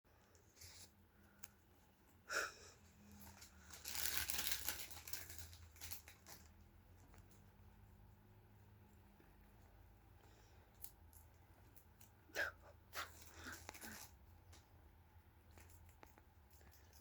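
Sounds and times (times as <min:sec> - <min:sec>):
dry material rustling and crinkling: 0:03.0 - 0:07.5, 0:13.0 - 0:14.7.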